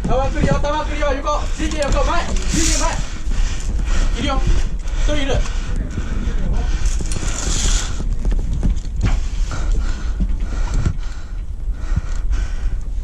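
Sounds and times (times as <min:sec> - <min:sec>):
footsteps: 0:00.0 - 0:12.7
wind rumble: 0:00.0 - 0:13.0
gear rattling: 0:00.4 - 0:05.8, 0:06.5 - 0:11.2.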